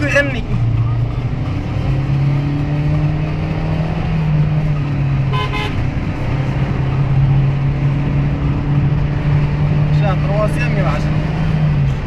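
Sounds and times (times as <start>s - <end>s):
diesel engine droning: 0.0s - 12.0s
vehicle horn toots: 5.3s - 6.0s.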